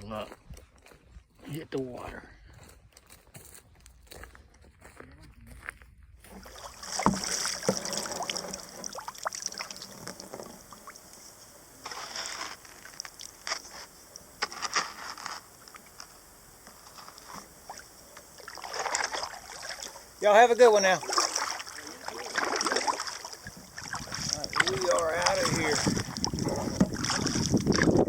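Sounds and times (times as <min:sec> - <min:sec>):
water splashing and dripping: 0:06.3 - 0:14.4, 0:16.9 - 0:28.0
kayak hull scraping and knocking: 0:06.3 - 0:28.0.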